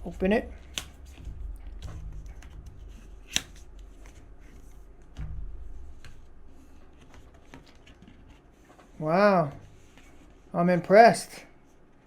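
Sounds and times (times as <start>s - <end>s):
paper and card rustling: 0.5s - 5.2s, 5.9s - 10.6s.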